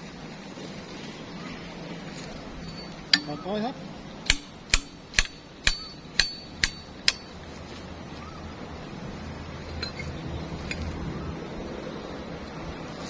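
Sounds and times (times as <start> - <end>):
sharp metallic clanks: 2.6 - 3.4, 4.2 - 7.4.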